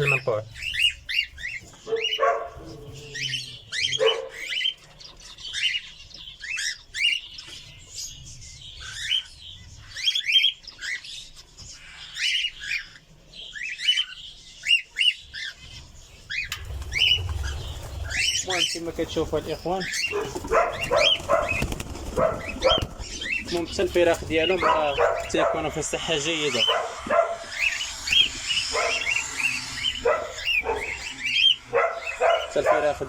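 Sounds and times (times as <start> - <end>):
cockatiels chirping: 0.0 - 33.0
low drawn-out squawks: 22.2 - 32.5.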